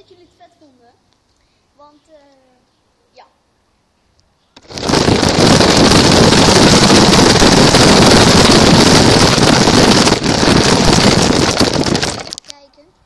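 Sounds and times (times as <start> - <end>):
toy car driving noise: 4.6 - 12.5
wind rush on microphone: 4.6 - 12.5.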